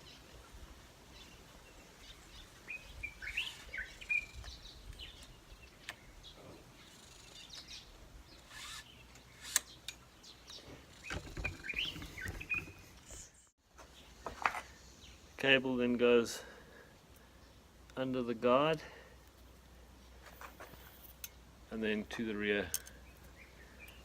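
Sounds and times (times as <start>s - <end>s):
faint bird chirps: 1.1s - 15.3s.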